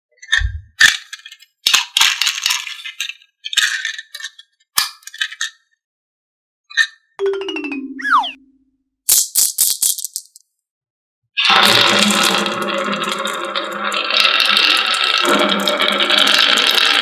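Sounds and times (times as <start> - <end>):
marbles rattling down wooden track: 0.8 - 5.5, 9.1 - 10.4, 11.5 - 17.0
downward sliding tone: 7.2 - 8.7.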